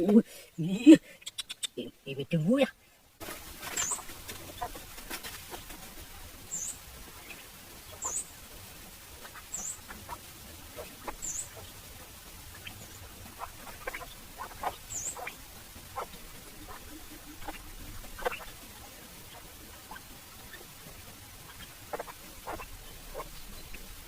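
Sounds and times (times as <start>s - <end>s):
outdoor background hiss: 0.0s - 24.0s
high bird chirps: 3.7s - 4.0s, 6.5s - 8.3s, 13.7s - 15.4s
softer lower bird chirps: 6.4s - 8.5s, 9.3s - 10.0s, 10.8s - 11.7s, 12.5s - 15.4s.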